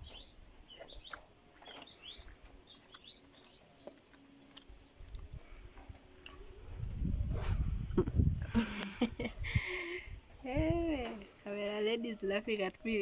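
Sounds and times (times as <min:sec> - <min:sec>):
small birds chirping: 0:00.0 - 0:06.5.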